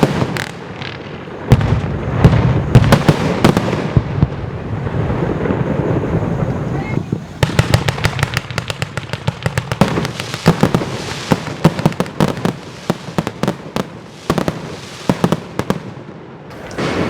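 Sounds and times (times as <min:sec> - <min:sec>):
fireworks bangs and crackling: 0:00.0 - 0:17.0.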